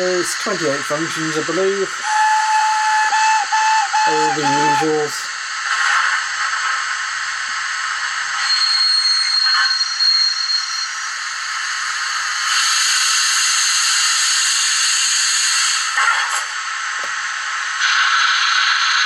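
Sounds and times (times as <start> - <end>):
faint high steady tone: 0.0 - 5.3
steam hiss from small speaker: 0.0 - 19.0.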